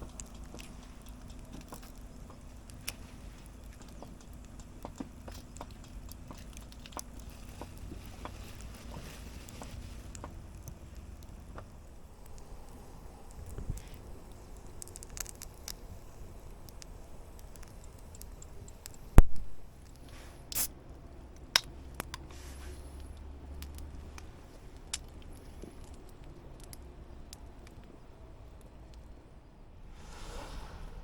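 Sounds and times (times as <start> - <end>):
light handling clicks and rattles: 0.0 - 12.4
short hiss: 20.0 - 20.7, 29.9 - 31.0.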